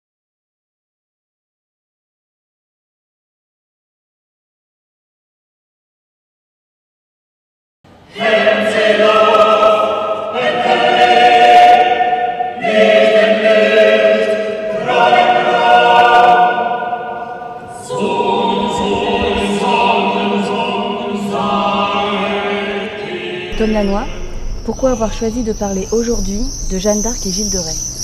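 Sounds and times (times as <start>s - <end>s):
choir singing sustained chords: 7.9s - 28.0s.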